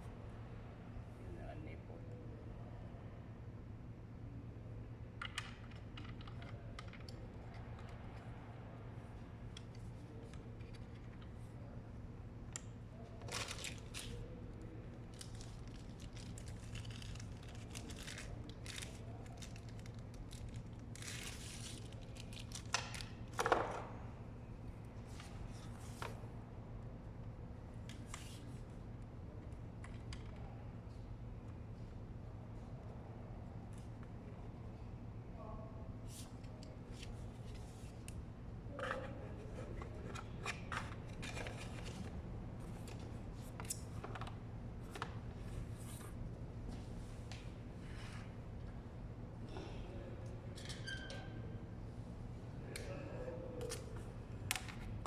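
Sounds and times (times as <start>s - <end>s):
steady low hum: 0.0s - 55.0s
packaging rustling and crinkling: 13.2s - 14.2s.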